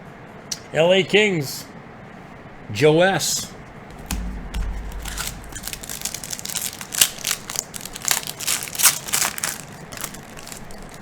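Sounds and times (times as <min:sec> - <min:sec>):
dull bump: 0:03.6 - 0:07.9
foil wrapper crinkling: 0:03.9 - 0:11.0.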